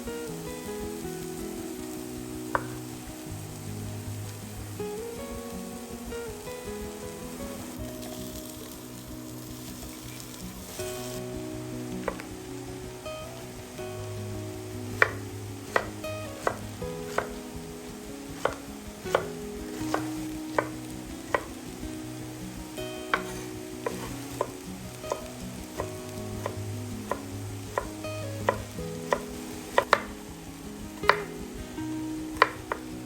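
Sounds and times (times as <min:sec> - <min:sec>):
light frying: 0:00.0 - 0:33.0
soft background music: 0:00.0 - 0:33.0
utensil clicking on a pan: 0:02.6 - 0:02.8, 0:12.0 - 0:12.3, 0:15.0 - 0:17.4, 0:18.4 - 0:21.6, 0:23.1 - 0:30.1, 0:31.0 - 0:31.3, 0:32.4 - 0:32.8.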